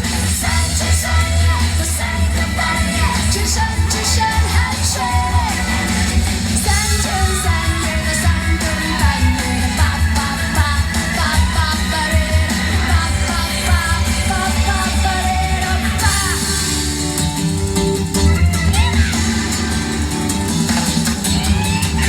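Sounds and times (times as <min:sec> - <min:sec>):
person singing: 0:00.0 - 0:17.4
pop-rock guitar and bass: 0:00.0 - 0:22.0.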